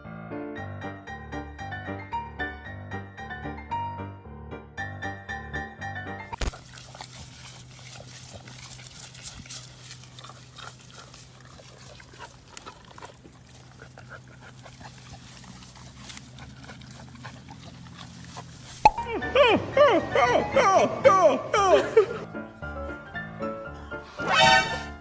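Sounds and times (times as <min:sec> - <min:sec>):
small animal sounds: 0:06.4 - 0:19.2.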